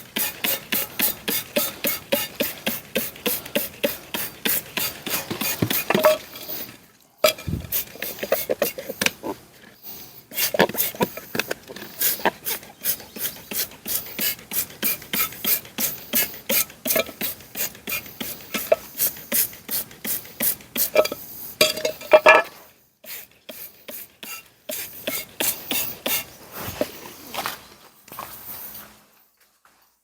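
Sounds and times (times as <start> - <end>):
ratchet wrench clicking: 0.2 - 6.0.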